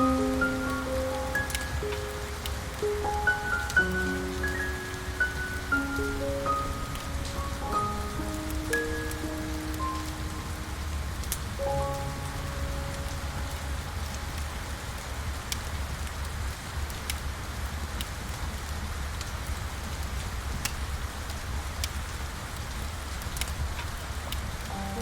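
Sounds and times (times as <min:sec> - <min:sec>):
piano note: 0:00.0 - 0:15.0, 0:24.7 - 0:25.0
fire crackling: 0:00.0 - 0:25.0
steady rain: 0:00.0 - 0:25.0.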